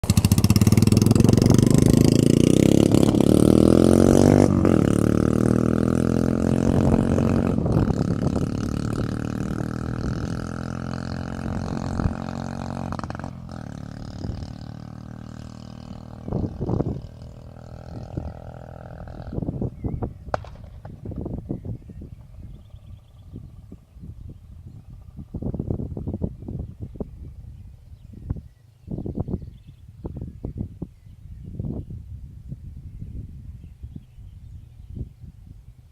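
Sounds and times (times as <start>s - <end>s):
motorcycle engine revving: 0.0s - 27.4s
exhaust popping cracks: 20.0s - 21.5s.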